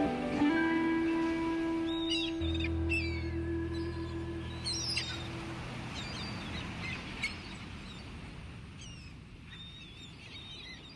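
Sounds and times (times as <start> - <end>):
held music chord: 0.0 - 5.9
birds chirping: 0.0 - 8.2
outdoor ambience: 0.0 - 9.6.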